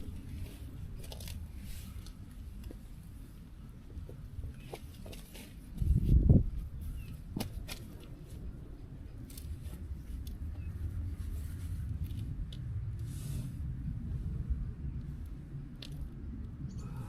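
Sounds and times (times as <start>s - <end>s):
small clicks and rustles: 0.0s - 3.1s, 3.9s - 5.9s, 9.1s - 13.1s, 15.0s - 16.6s
wind rumbling on microphone: 0.0s - 17.0s.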